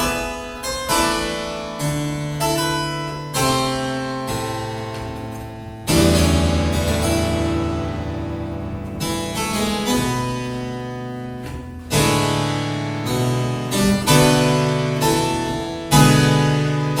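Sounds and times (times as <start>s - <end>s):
harpsichord chords: 0.0s - 17.0s.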